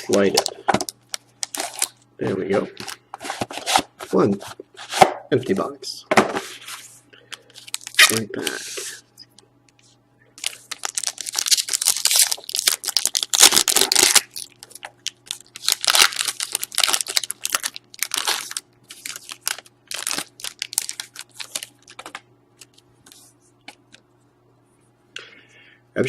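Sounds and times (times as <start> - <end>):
card pack wrapper tearing and crinkling: 0.1 - 2.0, 7.6 - 8.6, 10.4 - 22.8.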